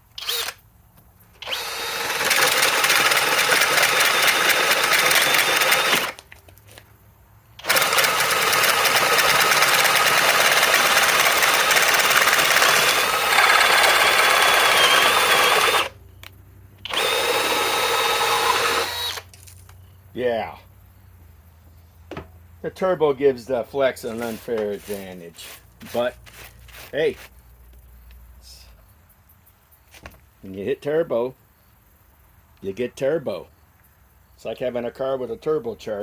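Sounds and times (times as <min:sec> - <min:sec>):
cordless hammer drill boring: 0:00.2 - 0:00.6, 0:01.4 - 0:06.2, 0:07.6 - 0:15.9, 0:16.8 - 0:19.2.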